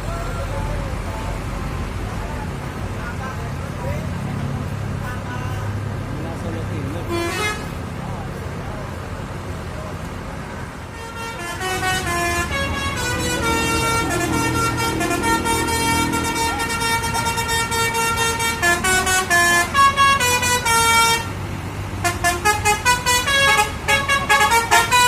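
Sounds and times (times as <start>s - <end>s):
multi-tone horn playing a melody: 10.9s - 21.3s, 22.0s - 25.0s.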